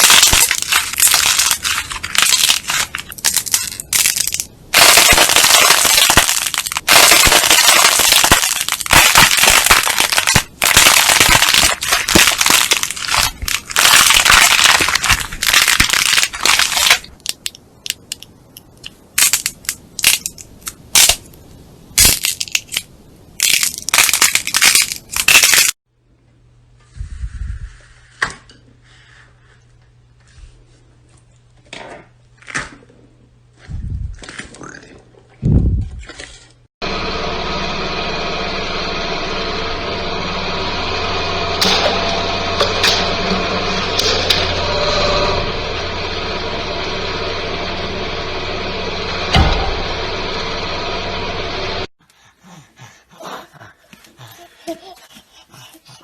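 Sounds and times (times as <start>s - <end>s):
low steady hum: 0.0s - 25.2s, 26.0s - 51.9s
crunchy slime crackling and popping: 0.0s - 25.8s.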